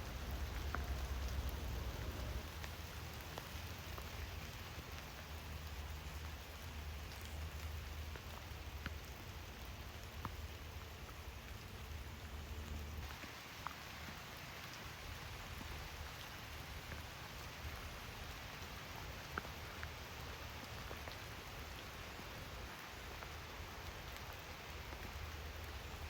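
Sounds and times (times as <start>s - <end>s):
low rumble: 0.0s - 2.5s
single raindrops: 0.0s - 26.0s
steady rain falling: 0.0s - 26.0s.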